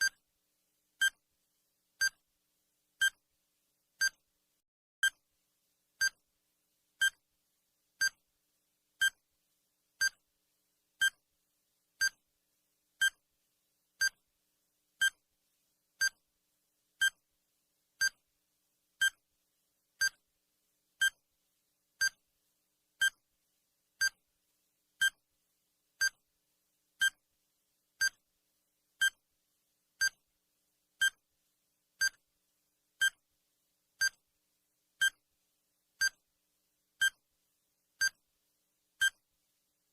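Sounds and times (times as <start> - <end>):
electronic timer ticks: 1.0 - 1.2, 2.0 - 2.2, 3.0 - 3.2, 4.0 - 4.2, 6.0 - 6.2, 7.0 - 7.2, 8.0 - 8.2, 9.0 - 9.2, 10.0 - 10.2, 11.0 - 11.2, 12.0 - 12.2, 13.0 - 13.2, 14.0 - 14.2, 15.0 - 15.2, 16.0 - 16.2, 17.0 - 17.2, 18.0 - 18.2, 19.0 - 19.2, 20.0 - 20.2, 21.0 - 21.2, 22.0 - 22.2, 23.0 - 23.2, 24.0 - 24.2, 25.0 - 25.2, 26.0 - 26.2, 27.0 - 27.2, 28.0 - 28.2, 29.0 - 29.2, 30.0 - 30.2, 31.0 - 31.2, 32.0 - 32.2, 33.0 - 33.2, 34.0 - 34.2, 35.0 - 35.2, 36.0 - 36.2, 37.0 - 37.2, 38.0 - 38.2, 39.0 - 39.2.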